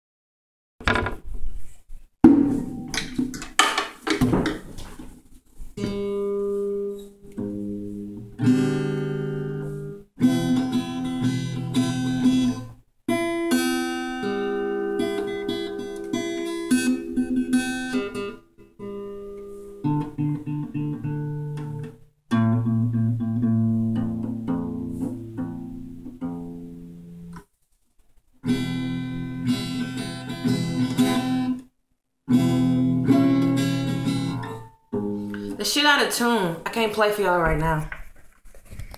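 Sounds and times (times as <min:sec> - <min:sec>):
out of tune guitar chords: 0:05.9 - 0:27.3.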